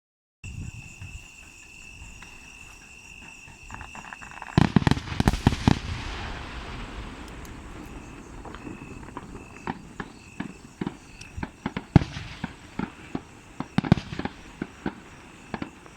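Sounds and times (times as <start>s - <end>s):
high insect trill: 0.4s - 15.9s
fireworks bangs: 3.6s - 15.9s
fireworks crackle: 3.7s - 15.9s.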